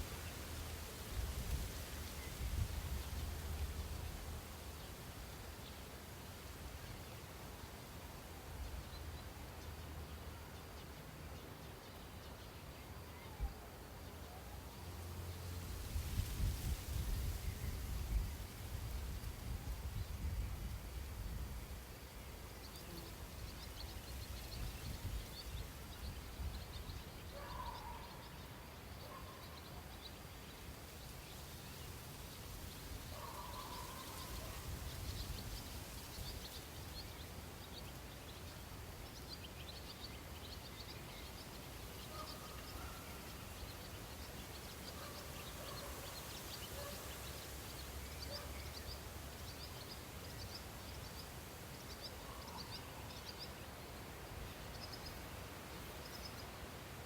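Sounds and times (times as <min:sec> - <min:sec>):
birds chirping faintly: 0:16.2 - 0:57.0.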